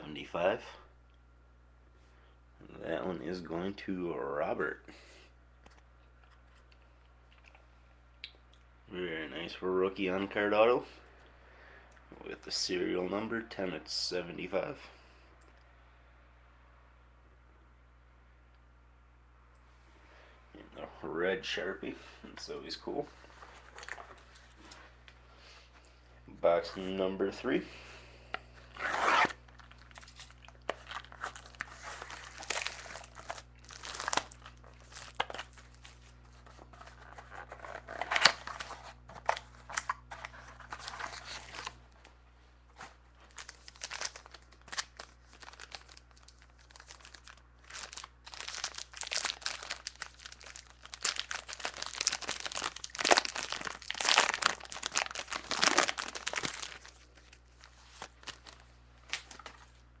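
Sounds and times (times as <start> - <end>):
packaging tearing and crinkling: 28.8 - 41.8, 43.2 - 59.6.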